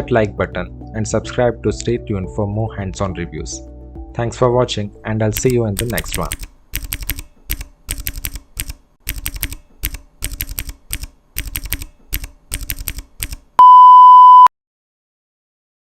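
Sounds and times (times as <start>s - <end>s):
mechanical keyboard typing: 5.3s - 13.5s
electronic beep: 13.6s - 14.5s.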